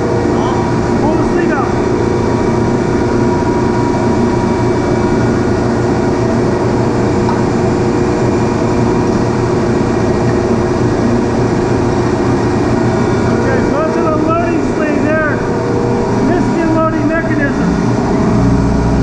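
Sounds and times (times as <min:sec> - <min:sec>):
refrigeration compressor drone: 0:00.0 - 0:19.0.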